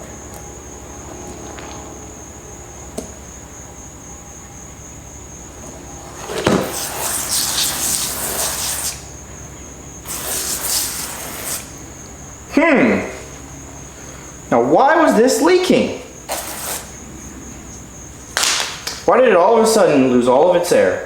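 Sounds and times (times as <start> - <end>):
high-pitched insect trill: 0.0 - 21.0
long hisses: 6.0 - 9.2, 10.0 - 11.9, 16.2 - 17.0.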